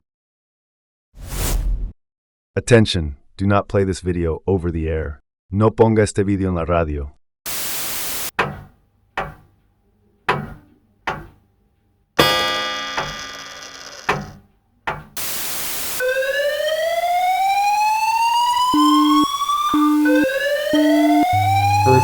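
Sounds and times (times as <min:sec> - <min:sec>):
burst of static: 0:07.5 - 0:08.3, 0:15.2 - 0:16.0
loud ringing crash: 0:12.2 - 0:13.9
pulsing alarm beeps: 0:16.0 - 0:22.0
siren rising in pitch: 0:16.0 - 0:22.0.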